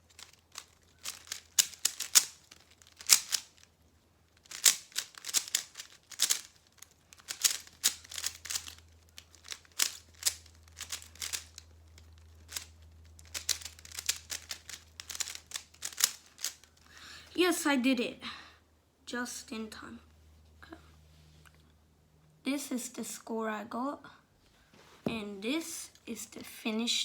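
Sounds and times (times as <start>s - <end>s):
plastic puzzle cube clicking: 0.1s - 3.7s, 4.4s - 16.9s.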